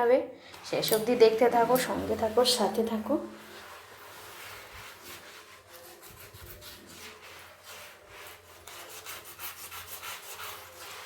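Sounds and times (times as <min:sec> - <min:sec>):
scrubbing a surface by hand: 0:03.4 - 0:11.0.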